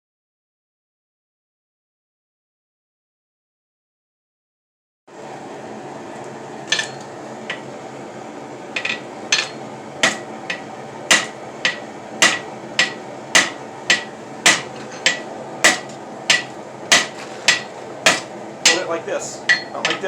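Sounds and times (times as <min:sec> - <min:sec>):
steady hum: 0:05.1 - 0:20.0
hammer striking iron on anvil: 0:06.7 - 0:07.7, 0:08.8 - 0:20.0.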